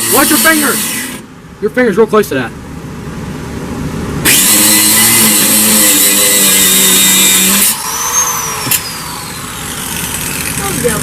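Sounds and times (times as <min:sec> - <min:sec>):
power grinder cutting steel: 0:00.0 - 0:01.2, 0:04.3 - 0:11.0.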